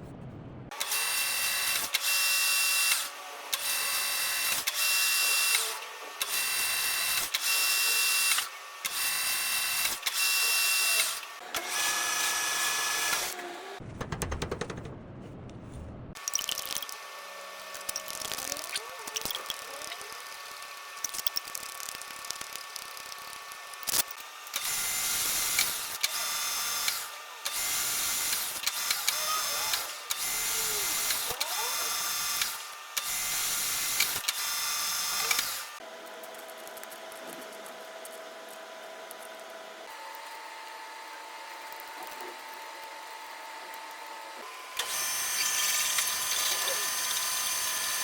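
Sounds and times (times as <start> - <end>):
metal lathe cutting noise: 44.2 - 48.0.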